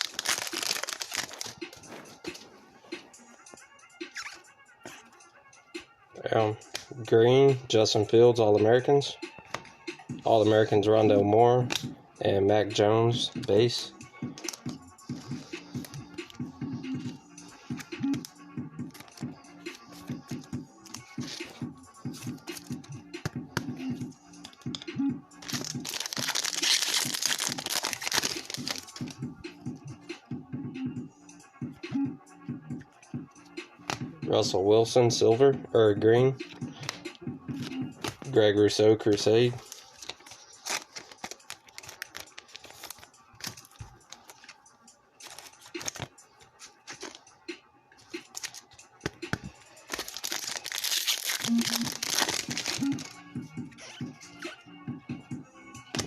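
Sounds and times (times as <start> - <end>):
foil wrapper tearing and crinkling: 0.0 - 1.6, 25.4 - 29.1, 39.6 - 44.5, 45.2 - 46.1, 48.3 - 48.6, 49.8 - 53.1
background music: 0.0 - 56.0
cards clicking: 11.6 - 11.9, 14.4 - 14.8, 18.9 - 21.6, 36.8 - 38.3, 39.1 - 44.6, 45.2 - 47.2, 48.0 - 53.1.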